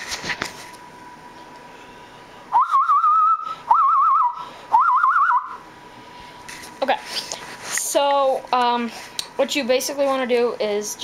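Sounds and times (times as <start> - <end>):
hand whistle bird calls: 2.5 - 5.6.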